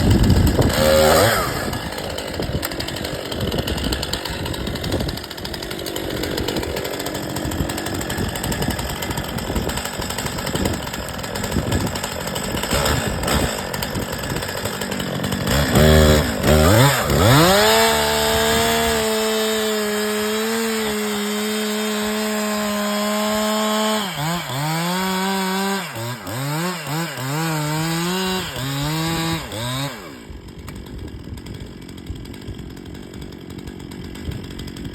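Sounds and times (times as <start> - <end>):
wind buffeting microphone: 0.0 - 13.2
chainsaw running: 0.0 - 34.9.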